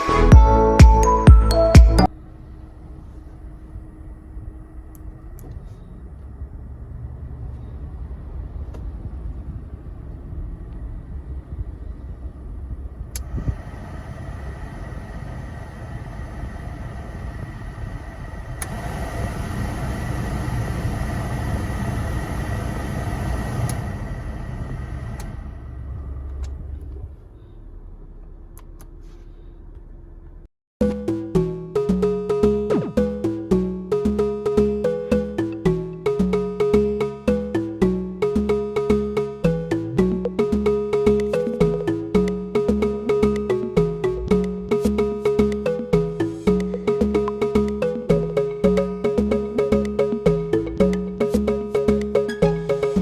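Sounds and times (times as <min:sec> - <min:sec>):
car engine rumbling: 0:02.0 - 0:53.0
rushing noise: 0:06.3 - 0:26.8.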